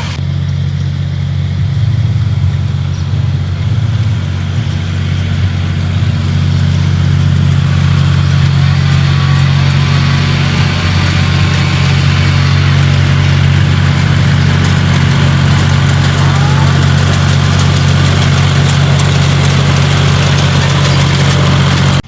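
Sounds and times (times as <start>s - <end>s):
motor humming: 0.0s - 0.2s, 4.8s - 22.0s.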